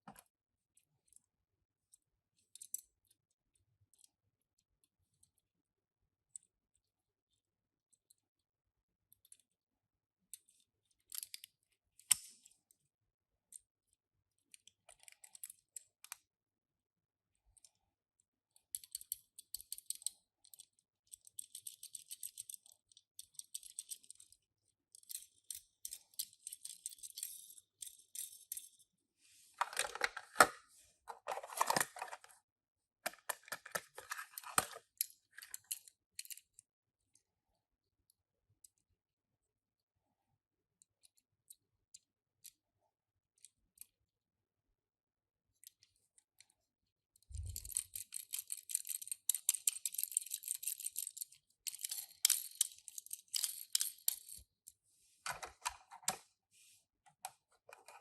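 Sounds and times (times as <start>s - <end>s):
toy cars clicking and rattling: 14.5s - 16.3s, 18.5s - 28.9s, 31.1s - 32.4s, 33.1s - 36.6s, 47.2s - 54.5s
packaging crinkling: 31.1s - 32.4s.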